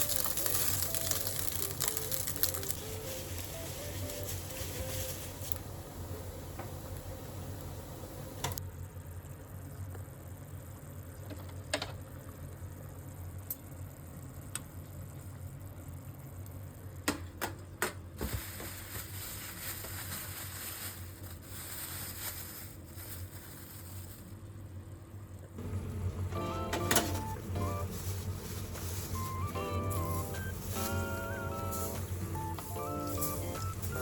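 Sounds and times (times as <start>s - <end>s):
steady low hum: 0.0s - 11.1s, 24.7s - 34.0s
faint hiss: 2.9s - 8.6s.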